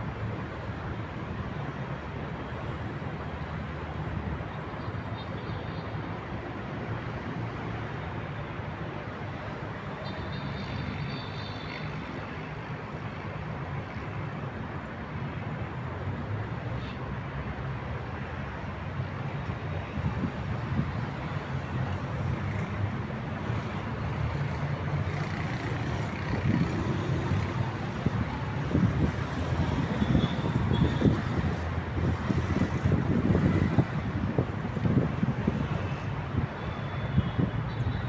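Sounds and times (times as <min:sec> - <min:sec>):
traffic rumble: 0:06.0 - 0:38.0.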